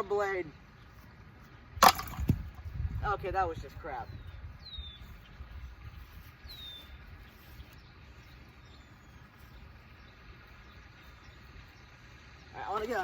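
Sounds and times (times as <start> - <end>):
bird chirping: 3.9 - 13.0.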